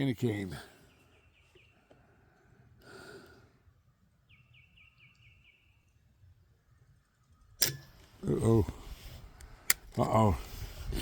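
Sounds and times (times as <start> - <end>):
small bird chirping: 4.2 - 6.1.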